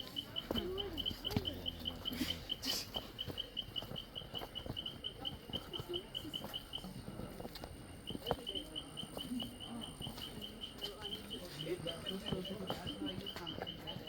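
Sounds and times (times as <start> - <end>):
light footsteps on a trail: 0.0 - 14.0
rapid high-pitched animal calls: 8.3 - 14.0.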